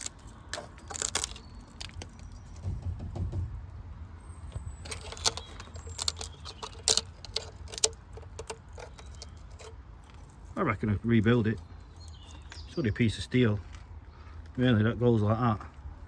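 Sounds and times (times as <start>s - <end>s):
sharp clicks and light knocks: 0.0s - 2.9s, 4.8s - 10.7s, 11.4s - 12.6s.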